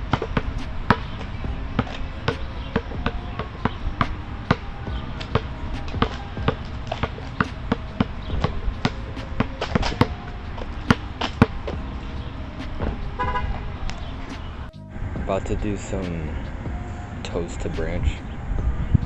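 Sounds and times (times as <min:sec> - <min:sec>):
basketball bouncing on hard court: 0:00.1 - 0:10.3, 0:10.9 - 0:12.0.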